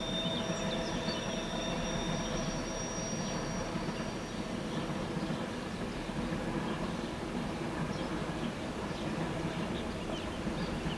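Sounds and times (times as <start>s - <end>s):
wheel-on-rail squeal: 0.0s - 4.9s.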